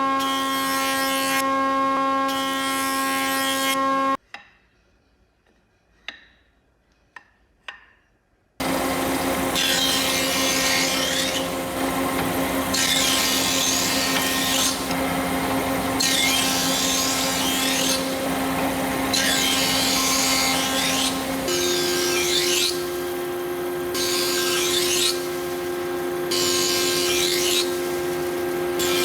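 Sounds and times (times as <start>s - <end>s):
power tool motor hum: 8.6s - 29.0s
tool sanding wood: 8.6s - 29.0s.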